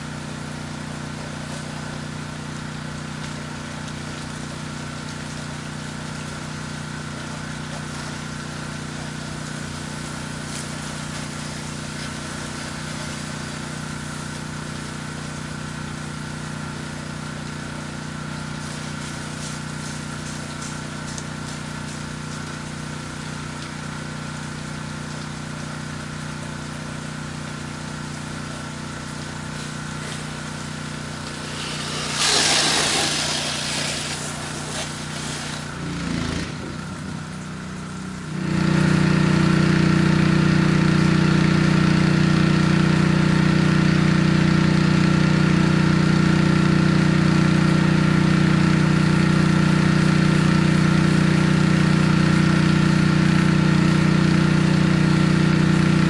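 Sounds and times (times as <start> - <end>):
pressure washer engine running: 0.0 - 56.0
loud hissing rush: 29.5 - 37.3.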